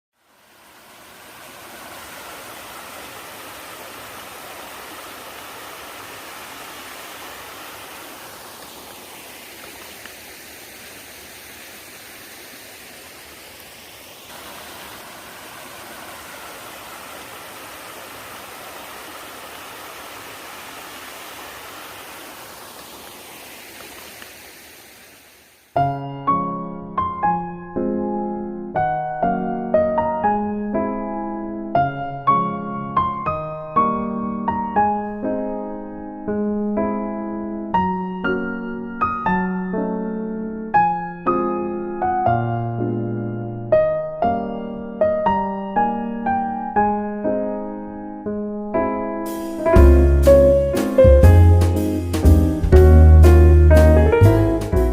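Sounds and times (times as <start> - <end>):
stream flowing: 0.2 - 25.8.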